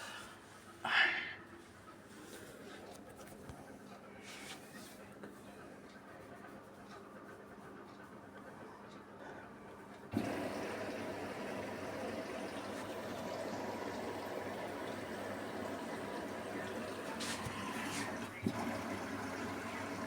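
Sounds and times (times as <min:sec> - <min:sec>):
water rushing into washing machine: 0:10.1 - 0:20.0.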